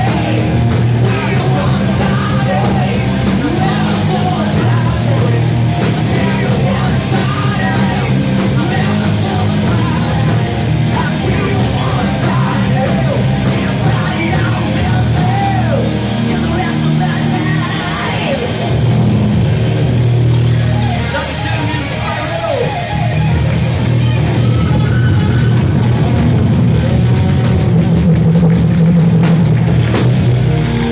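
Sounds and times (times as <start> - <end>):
yelled vocals: 0.0 - 26.2
rock band playing: 0.0 - 30.9.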